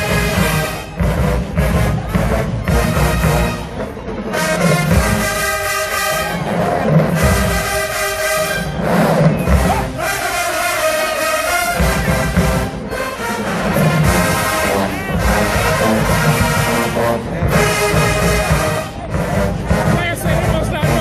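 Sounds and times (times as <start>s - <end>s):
heavy drum line: 0.0s - 10.6s, 11.5s - 21.0s
brass section chords: 0.0s - 21.0s
crowd noise: 0.0s - 21.0s.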